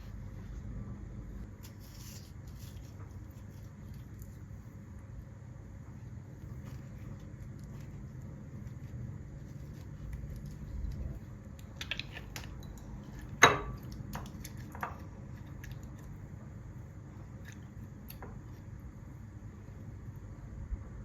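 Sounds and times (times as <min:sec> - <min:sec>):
small objects clicking and tapping: 0:10.1 - 0:16.2.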